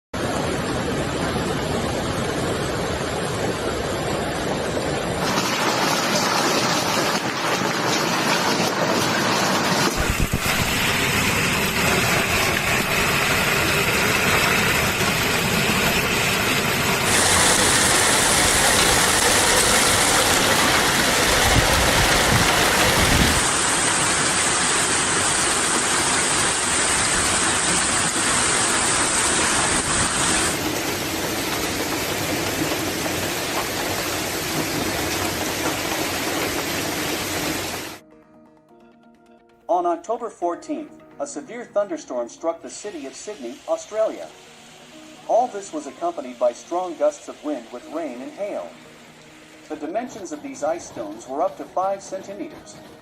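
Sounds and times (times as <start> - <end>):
heavy rain and hail: 0.2 - 38.0.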